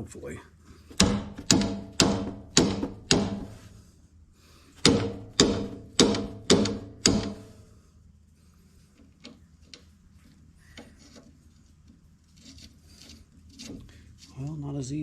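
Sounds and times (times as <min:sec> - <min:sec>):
hammer striking metal: 0:01.0 - 0:03.6, 0:04.8 - 0:07.5.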